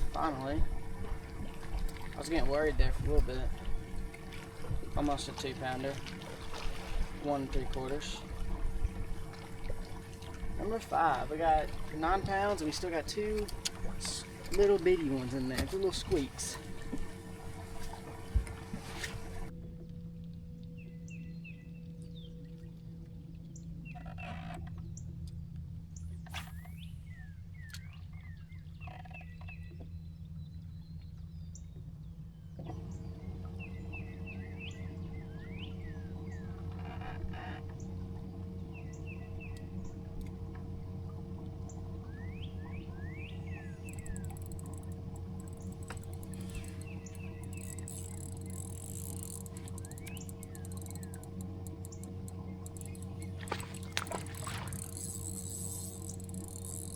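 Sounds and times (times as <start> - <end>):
low mechanical hum: 0.0 - 56.9
small birds chirping: 41.7 - 56.9.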